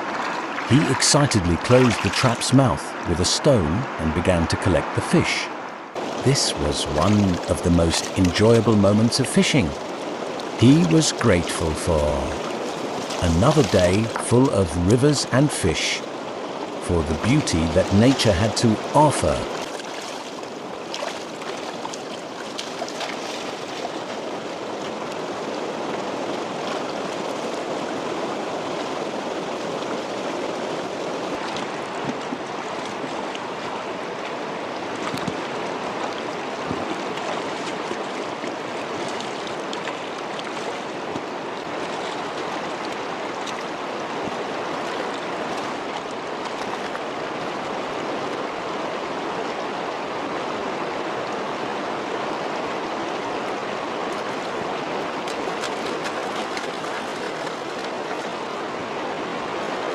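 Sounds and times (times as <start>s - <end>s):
stream flowing over stones: 0.0s - 59.9s.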